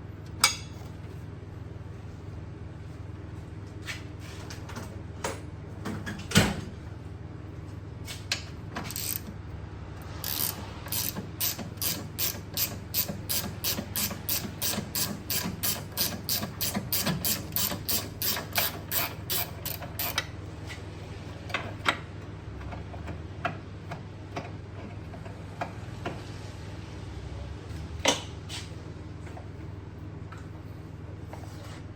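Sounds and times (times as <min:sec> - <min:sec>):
ratchet wrench clicking: 0:08.9 - 0:09.3, 0:10.2 - 0:20.2.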